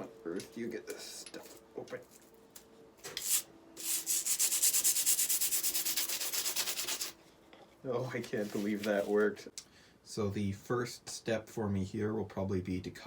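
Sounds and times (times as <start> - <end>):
fast rasping scraping strokes: 3.2 - 7.2.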